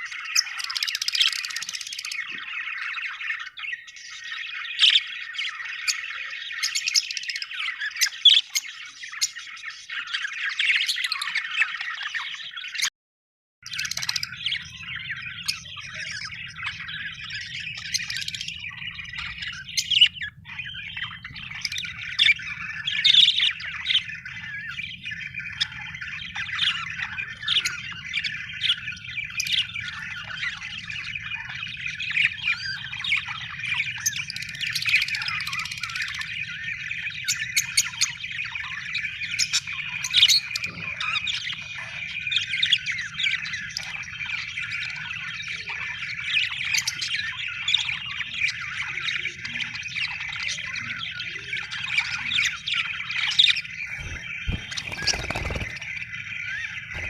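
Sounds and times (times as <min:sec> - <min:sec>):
budgerigars chattering and chirping: 0:00.0 - 0:12.9, 0:13.7 - 0:57.0.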